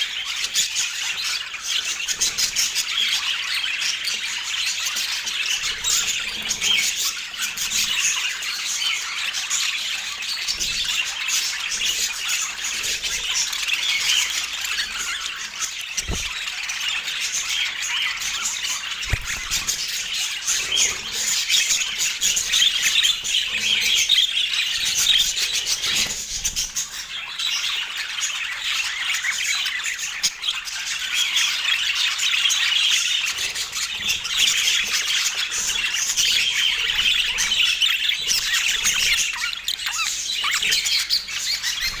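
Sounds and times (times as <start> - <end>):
budgerigar chirping: 16.0 - 16.4.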